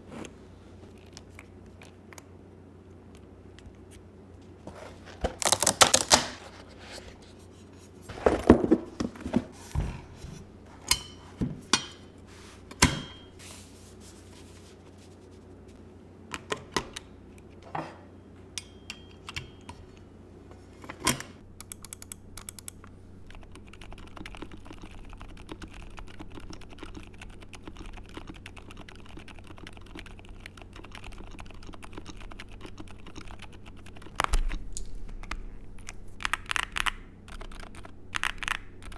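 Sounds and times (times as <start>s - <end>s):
mechanical keyboard typing: 21.6s - 34.6s, 35.2s - 38.9s.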